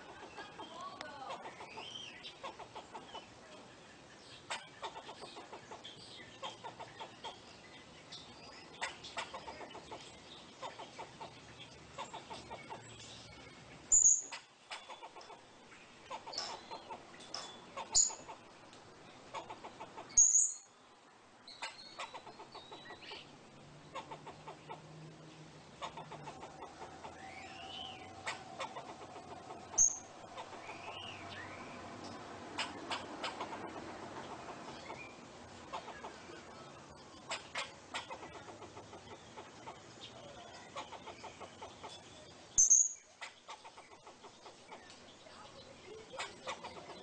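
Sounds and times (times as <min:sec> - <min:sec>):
squirrel squeak: 0:42.6 - 0:43.0.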